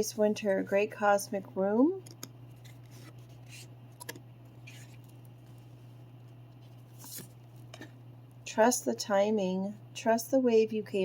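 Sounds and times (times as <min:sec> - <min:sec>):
low steady hum: 0:00.0 - 0:11.0
cards rustling and sliding: 0:02.5 - 0:05.7, 0:06.7 - 0:07.4.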